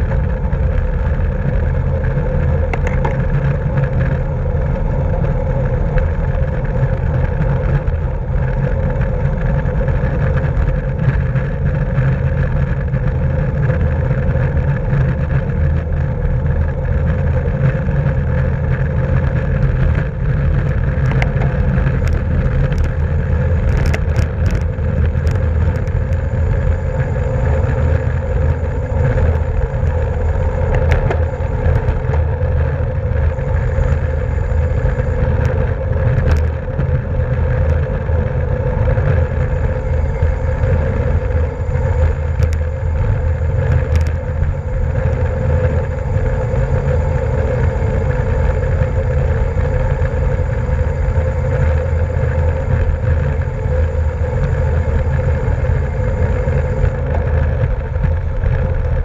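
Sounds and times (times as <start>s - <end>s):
wind rushing over microphone: 0.0s - 59.0s.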